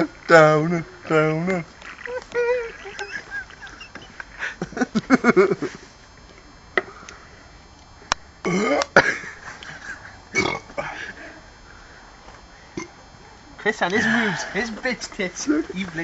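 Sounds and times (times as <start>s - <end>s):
man belching: 8.4s - 9.3s, 10.3s - 11.0s.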